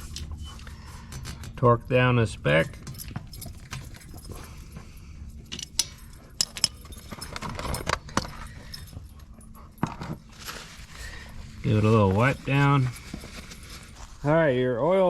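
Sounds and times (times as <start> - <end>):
metal hand tools clinking: 2.3 - 10.2.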